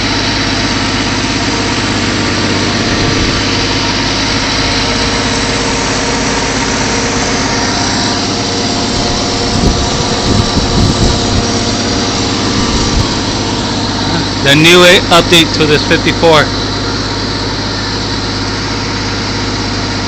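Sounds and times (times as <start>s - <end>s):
car engine idling: 0.0s - 20.0s
low bumps: 1.3s - 15.9s.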